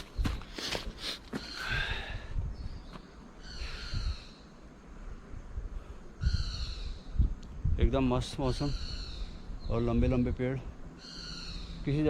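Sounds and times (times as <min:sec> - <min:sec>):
footsteps on stones: 0:00.0 - 0:01.7
bird calling: 0:00.0 - 0:04.8, 0:06.1 - 0:07.3, 0:08.3 - 0:12.0.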